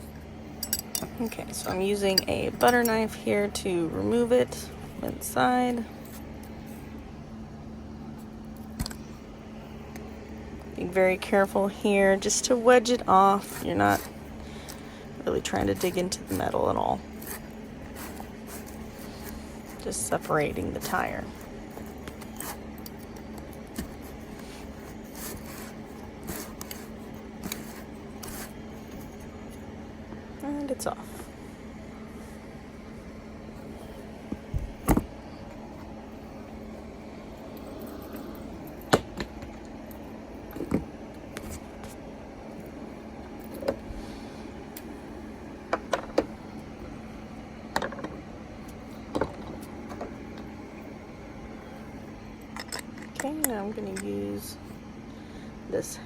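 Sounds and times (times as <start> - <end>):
steady low hum: 0.0 - 56.0
metal tools clicking and knocking: 0.6 - 3.1.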